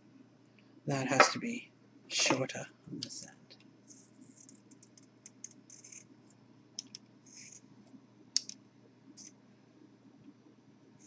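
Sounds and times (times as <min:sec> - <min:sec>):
faint clicks: 0:03.0 - 0:07.6.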